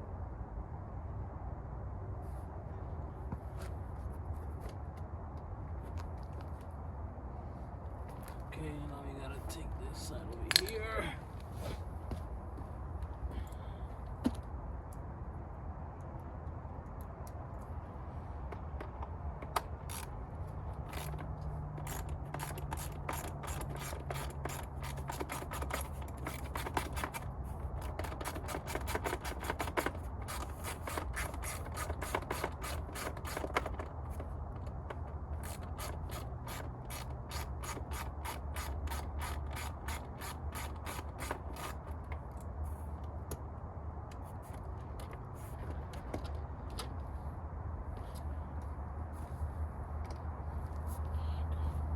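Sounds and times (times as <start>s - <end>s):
hand ratchet clicking: 19.4s - 20.1s, 20.8s - 34.2s, 35.4s - 41.9s.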